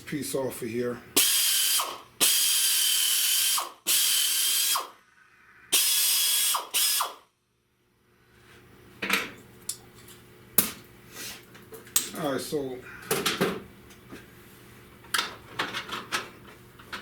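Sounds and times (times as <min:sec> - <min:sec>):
power cutting tool cutting metal: 0:01.2 - 0:04.9, 0:05.8 - 0:07.2.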